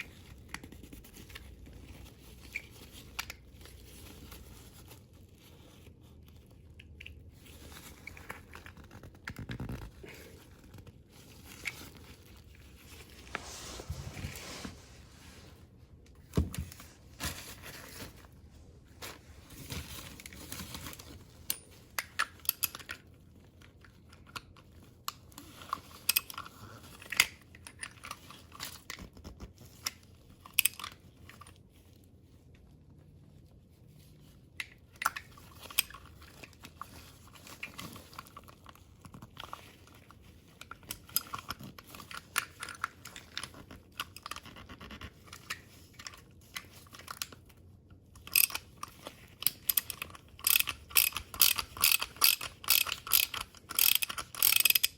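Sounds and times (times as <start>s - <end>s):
small metal parts clicking and scraping: 20.0s - 23.0s, 40.5s - 44.5s, 48.2s - 54.9s.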